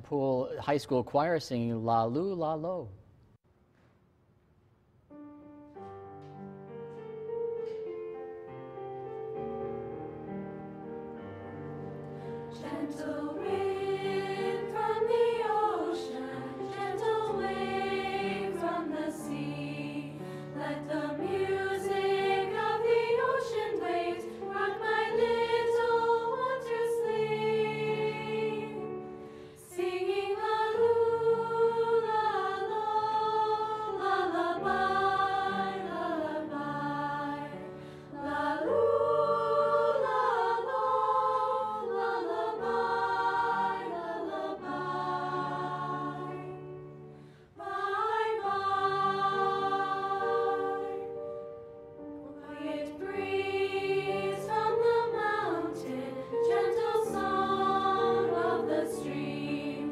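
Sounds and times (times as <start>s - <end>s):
choir singing in harmony: 8.7s - 59.9s
singers breathing: 12.0s - 12.5s, 20.2s - 20.6s, 29.0s - 29.7s, 37.7s - 38.2s, 47.0s - 47.6s.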